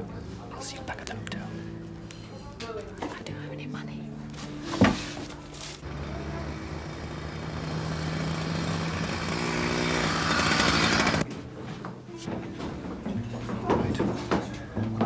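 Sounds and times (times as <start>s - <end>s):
vehicle engine running: 5.8s - 11.2s.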